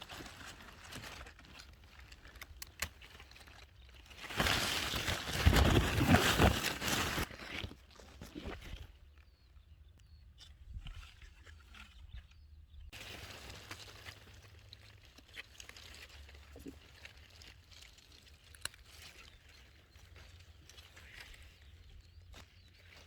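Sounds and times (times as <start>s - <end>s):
rustling handling noise: 0.0s - 9.0s.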